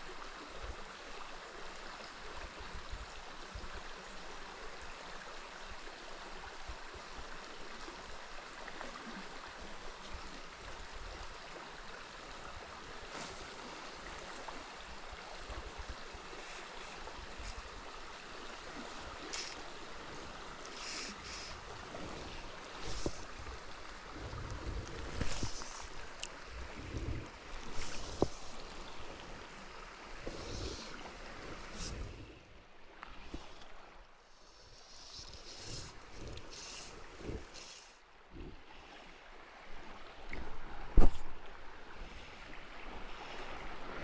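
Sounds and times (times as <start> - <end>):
river water running: 0.0 - 44.0
water splashing: 12.6 - 38.9.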